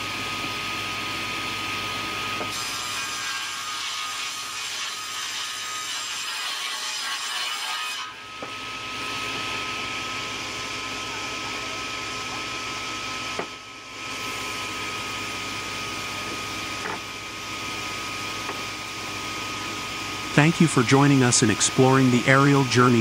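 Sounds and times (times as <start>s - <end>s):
sawmill machinery hum: 0.0s - 23.0s
high machine whine: 8.1s - 23.0s.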